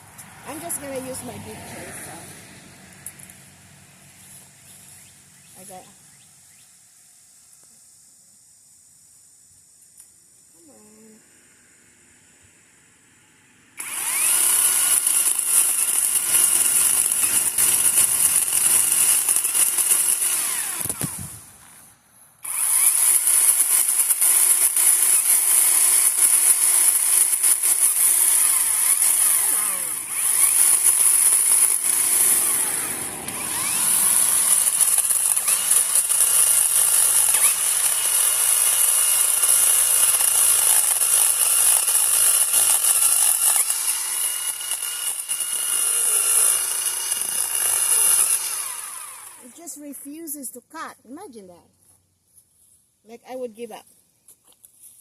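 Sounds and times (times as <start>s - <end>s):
chainsaw running: 13.8s - 21.8s, 22.4s - 49.8s.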